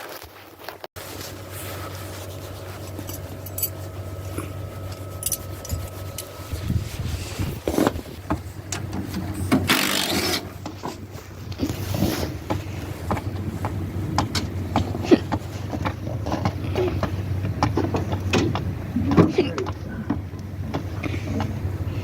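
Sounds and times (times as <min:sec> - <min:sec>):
loud rasping scrape: 0:01.0 - 0:13.2
hand tools clinking on metal: 0:01.1 - 0:06.6.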